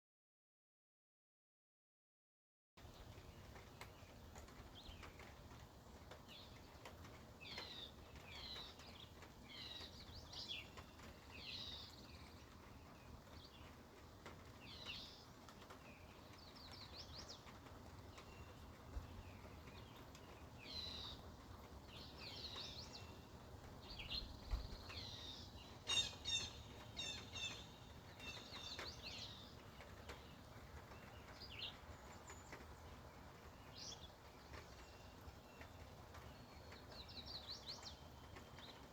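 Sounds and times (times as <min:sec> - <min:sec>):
birds chirping: 0:18.2 - 0:38.9.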